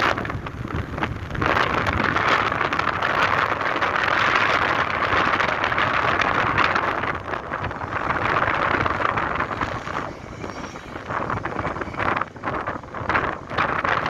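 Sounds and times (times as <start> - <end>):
strong wind gusting: 0.0 - 14.0
wind buffeting microphone: 0.0 - 14.0.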